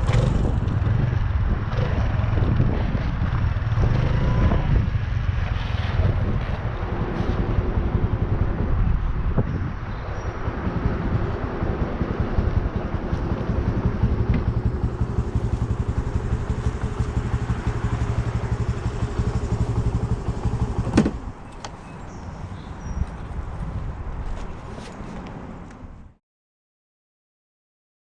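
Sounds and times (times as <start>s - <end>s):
motorcycle engine running: 0.0s - 9.8s, 10.4s - 21.4s.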